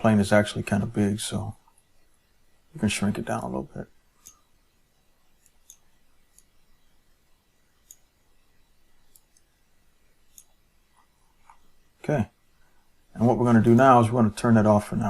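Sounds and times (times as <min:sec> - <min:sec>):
computer mouse clicks: 0:05.4 - 0:06.6, 0:07.8 - 0:08.1, 0:09.0 - 0:09.6, 0:10.3 - 0:10.6.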